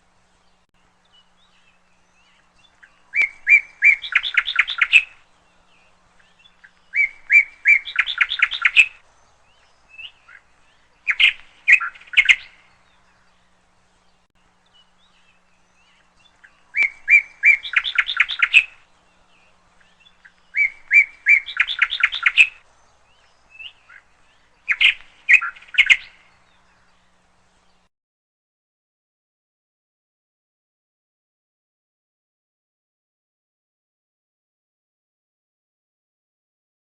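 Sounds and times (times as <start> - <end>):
bird rapid chirps: 1.2 - 5.2, 6.2 - 13.1, 14.8 - 18.9, 19.8 - 26.4.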